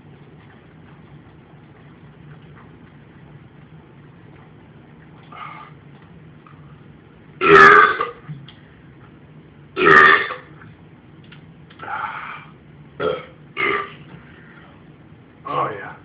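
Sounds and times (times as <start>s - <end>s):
person belching: 7.4s - 8.2s, 9.8s - 10.5s, 13.0s - 14.0s.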